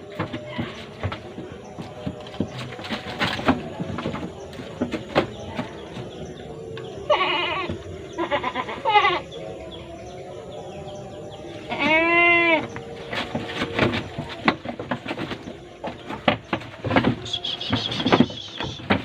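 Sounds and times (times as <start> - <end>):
goat bleating: 7.0 - 9.3, 11.7 - 12.6.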